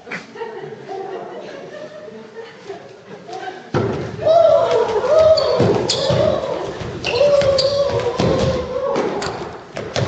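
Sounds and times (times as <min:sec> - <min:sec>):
thumps and knocks on a stage: 0:03.7 - 0:10.0.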